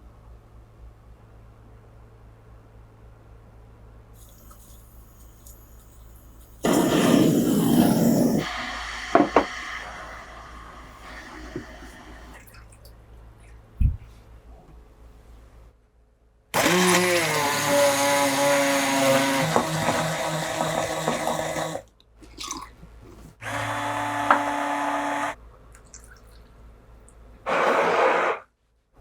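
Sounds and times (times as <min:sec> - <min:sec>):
immersion blender running: 0:16.6 - 0:21.8, 0:23.4 - 0:25.4.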